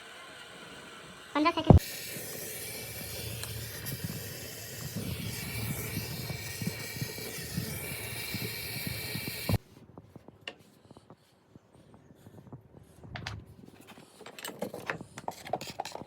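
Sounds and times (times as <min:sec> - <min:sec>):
loud hiss: 0:00.0 - 0:09.6
low crackle: 0:00.2 - 0:11.2.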